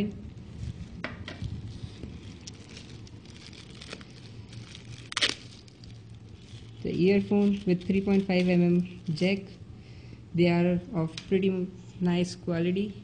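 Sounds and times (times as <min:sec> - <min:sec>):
packaging rustling and crinkling: 0:00.0 - 0:09.3.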